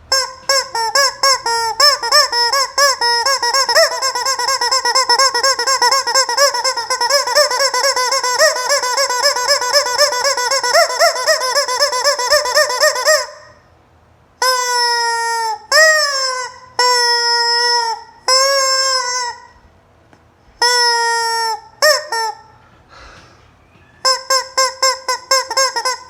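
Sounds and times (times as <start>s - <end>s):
rubber chicken toy squeaking: 0.0s - 13.6s, 14.4s - 19.6s, 20.6s - 22.6s, 23.6s - 26.0s.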